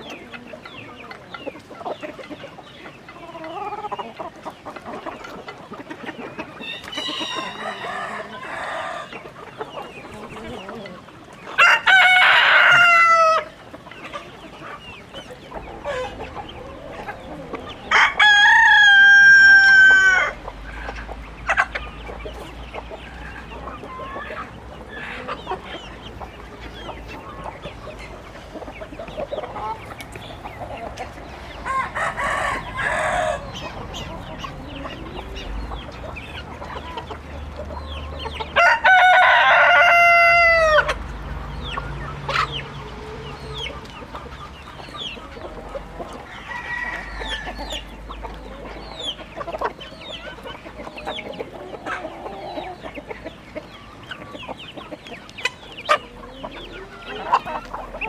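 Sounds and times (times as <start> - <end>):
chickens clucking: 0.0 - 58.0
rooster crowing: 6.6 - 9.2, 11.6 - 13.5, 17.8 - 20.4, 31.6 - 33.6, 38.6 - 40.9, 46.2 - 47.9.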